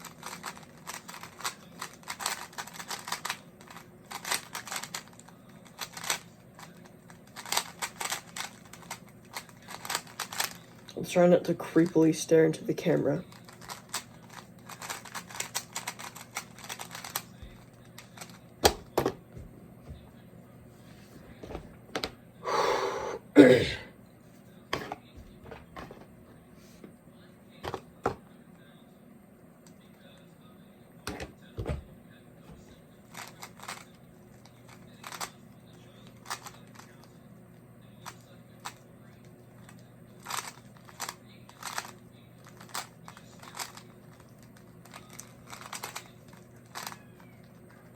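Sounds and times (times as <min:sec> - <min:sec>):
puzzle cube turning clicks: 0:00.1 - 0:10.6, 0:13.4 - 0:19.0, 0:40.2 - 0:41.9, 0:42.5 - 0:47.0.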